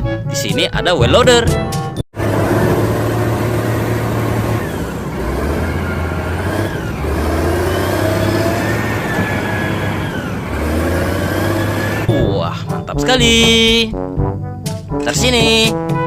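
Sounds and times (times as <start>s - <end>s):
wheel loader engine revving: 2.2s - 12.3s.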